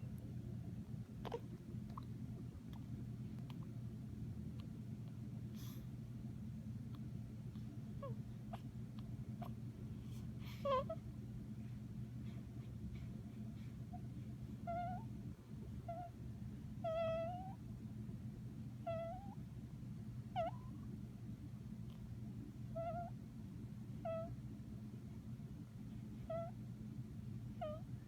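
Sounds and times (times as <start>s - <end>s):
faint low hum: 0.0s - 28.0s.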